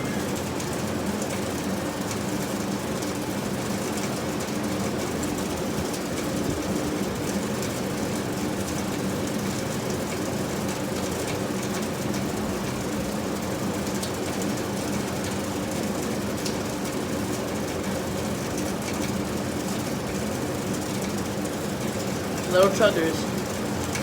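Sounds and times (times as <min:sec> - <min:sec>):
steady mechanical hum: 0:00.0 - 0:24.0.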